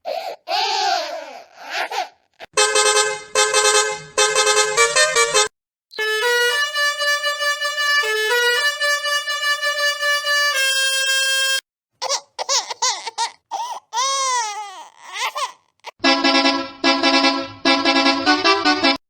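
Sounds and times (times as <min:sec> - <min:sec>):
horn playing short tune: 0:02.6 - 0:11.6, 0:16.0 - 0:19.0.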